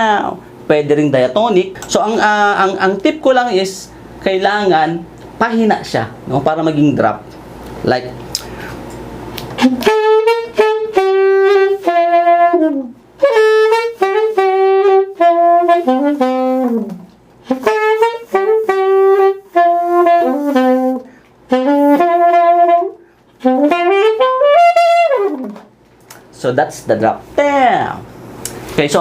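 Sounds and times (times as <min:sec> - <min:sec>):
saxophone playing melodic phrases: 0:09.4 - 0:25.7.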